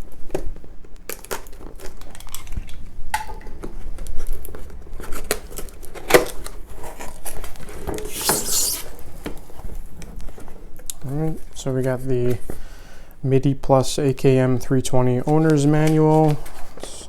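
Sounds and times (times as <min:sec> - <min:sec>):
tape being cut and pulled: 0:08.0 - 0:09.0
tape ripping hiss: 0:08.0 - 0:09.1.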